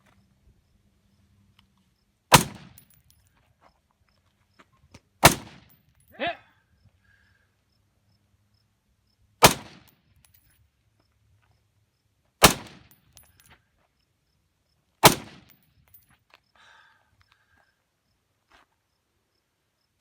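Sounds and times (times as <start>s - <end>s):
rifle shots with echo: 2.3s - 2.9s, 5.2s - 5.7s, 9.4s - 9.9s, 12.4s - 13.0s, 15.0s - 15.6s.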